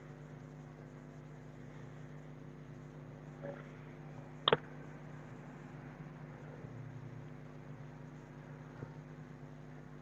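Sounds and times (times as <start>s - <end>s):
faint background hum: 0.0s - 10.0s.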